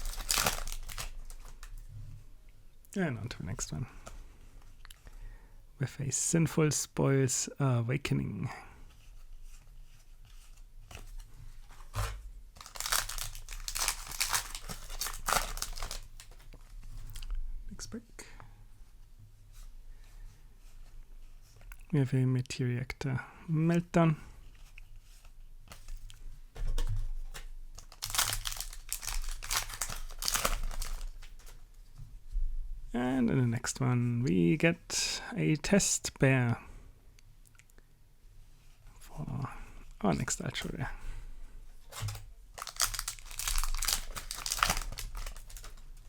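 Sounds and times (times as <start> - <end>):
foil wrapper tearing and crinkling: 0.0 - 1.8, 11.8 - 16.6, 27.8 - 31.6, 41.9 - 46.0.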